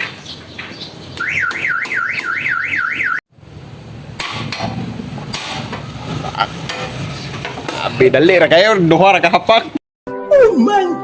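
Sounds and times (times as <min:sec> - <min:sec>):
workshop noise: 0:00.0 - 0:09.8
warbling alarm tone: 0:01.2 - 0:03.2.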